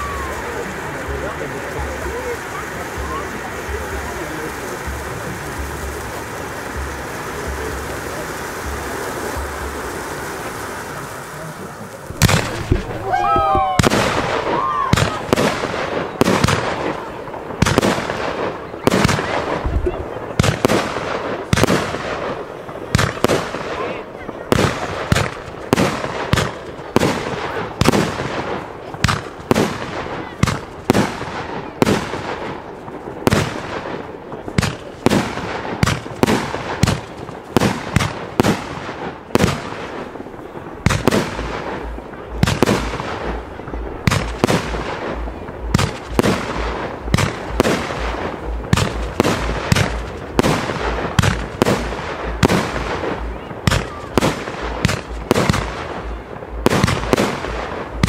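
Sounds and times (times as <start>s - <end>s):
fireworks bangs and crackling: 0.0s - 58.0s
deep thuds: 12.1s - 14.0s, 19.6s - 20.7s.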